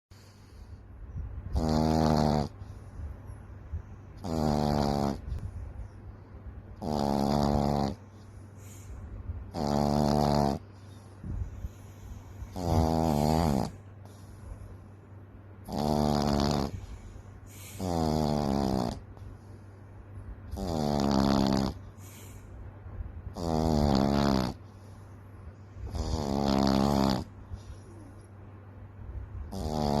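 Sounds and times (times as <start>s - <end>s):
puppy snoring loudly: 1.4s - 2.8s, 4.2s - 5.5s, 6.8s - 8.0s, 9.5s - 10.8s, 11.5s - 14.2s, 15.6s - 19.2s, 20.5s - 22.4s, 23.3s - 24.7s, 25.8s - 27.8s, 29.4s - 30.0s.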